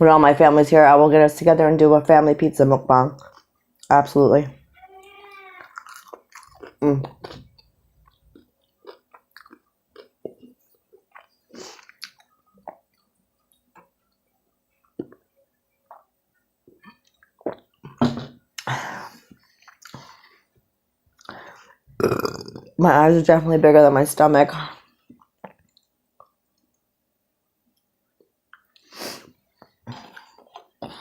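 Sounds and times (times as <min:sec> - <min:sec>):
person chewing food: 0:05.6 - 0:14.2, 0:19.4 - 0:20.4, 0:29.6 - 0:31.0.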